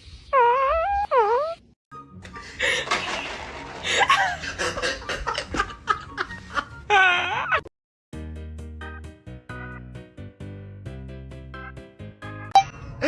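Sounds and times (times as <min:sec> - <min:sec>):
music: 0:01.9 - 0:07.4, 0:08.1 - 0:13.0
laughter: 0:03.8 - 0:06.8.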